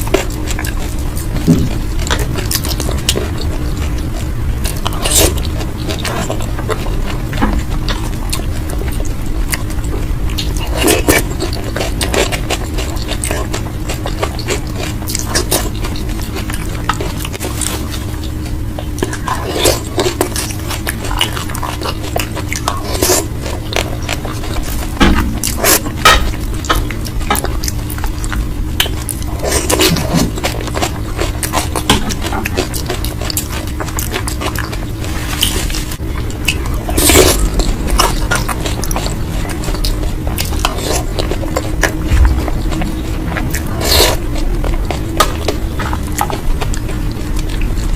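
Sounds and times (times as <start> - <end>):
biting and chewing crunchy food: 0.0 - 47.9
steady low hum: 0.0 - 47.9.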